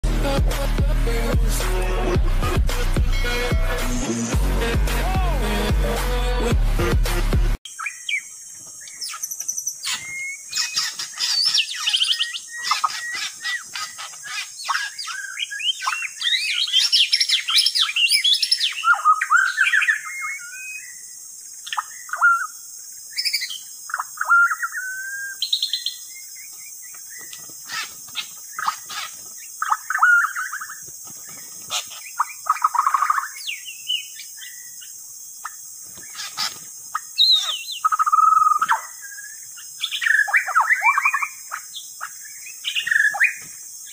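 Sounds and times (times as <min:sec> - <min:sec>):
songbird whistling and chirping: 0:07.7 - 0:26.5, 0:27.1 - 0:30.8, 0:35.4 - 0:43.9.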